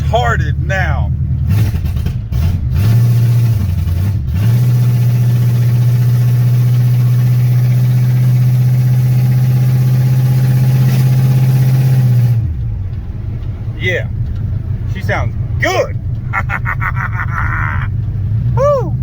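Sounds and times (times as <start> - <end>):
loud engine revving: 0.0 - 12.6.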